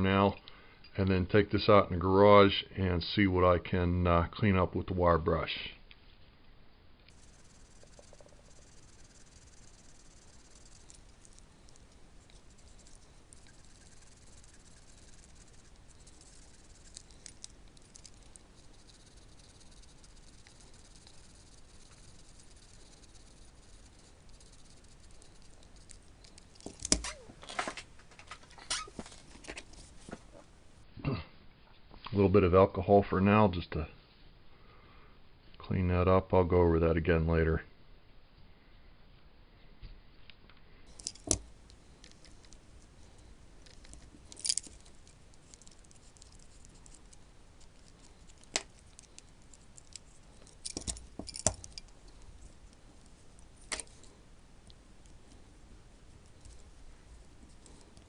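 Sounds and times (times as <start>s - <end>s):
small metal parts clicking: 7.1s - 27.6s, 40.9s - 42.6s, 43.6s - 52.3s.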